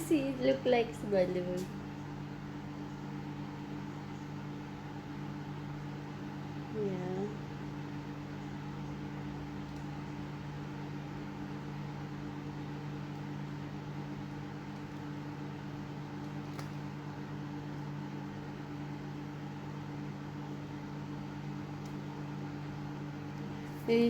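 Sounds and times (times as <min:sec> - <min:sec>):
microwave oven humming: 0:00.0 - 0:24.0.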